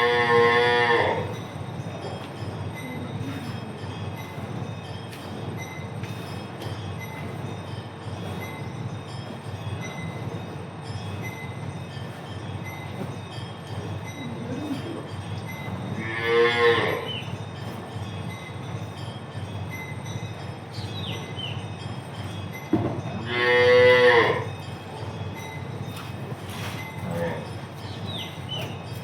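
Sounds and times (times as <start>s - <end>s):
cow mooing: 0.0s - 1.3s, 16.0s - 17.1s, 23.2s - 24.5s.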